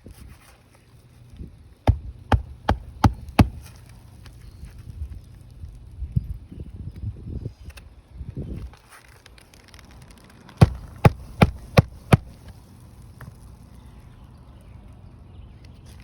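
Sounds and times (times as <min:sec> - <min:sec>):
hammer striking roofing nails: 0:01.9 - 0:03.7, 0:10.6 - 0:12.4
shingles rustling: 0:01.9 - 0:04.8, 0:08.8 - 0:13.6.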